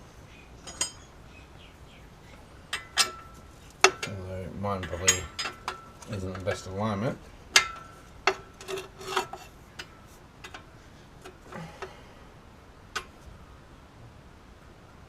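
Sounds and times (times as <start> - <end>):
hand tools clinking on metal: 2.7 - 11.9.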